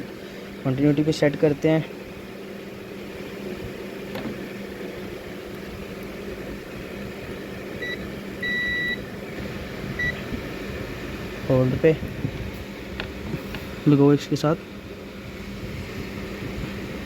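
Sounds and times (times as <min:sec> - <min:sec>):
multimeter buzzer beeping: 0:07.8 - 0:09.1, 0:10.0 - 0:10.2.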